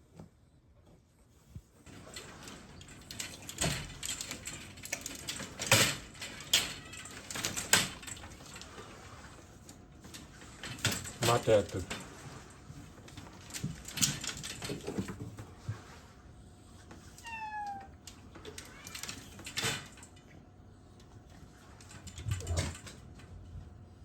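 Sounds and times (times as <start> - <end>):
cat meowing: 17.2 - 18.0.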